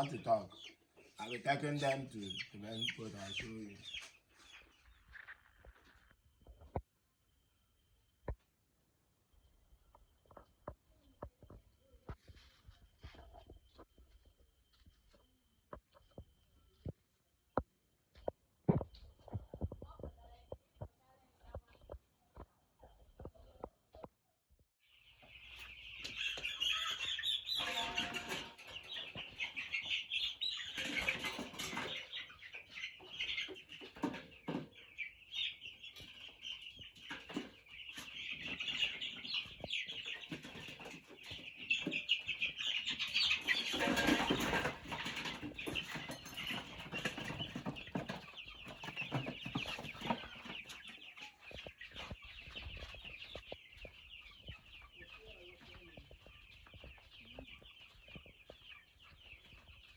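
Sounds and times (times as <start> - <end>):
chicks peeping: 0.0 - 6.9, 9.4 - 24.1, 24.9 - 59.9
wing flapping and scuffling: 35.9 - 59.9.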